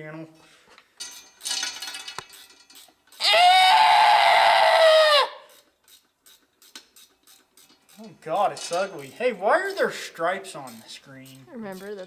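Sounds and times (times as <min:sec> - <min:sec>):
high-pitched censor cry: 0:03.2 - 0:05.5.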